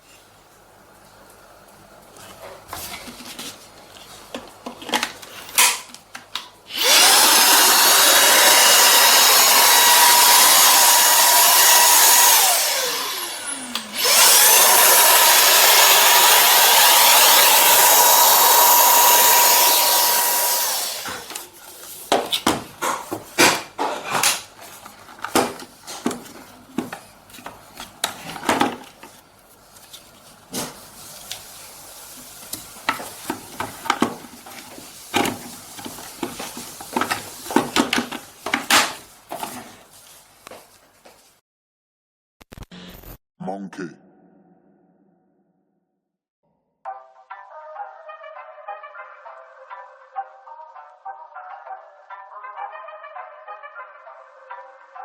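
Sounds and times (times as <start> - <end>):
vacuum motor whining: 6.7 - 21.6.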